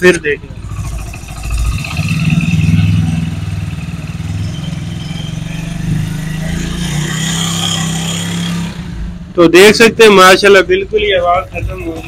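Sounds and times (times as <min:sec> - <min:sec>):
motorcycle engine running: 0:00.0 - 0:09.3.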